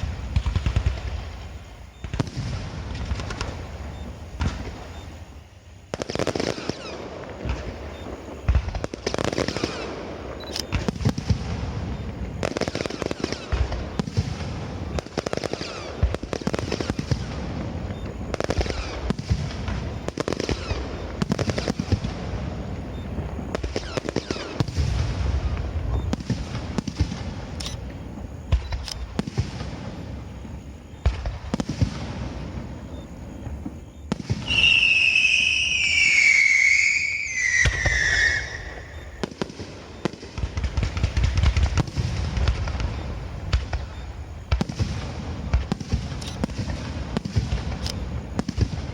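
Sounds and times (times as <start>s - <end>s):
fireworks booming and crackling: 0.0s - 48.9s
firework whistle sliding down: 34.3s - 39.4s.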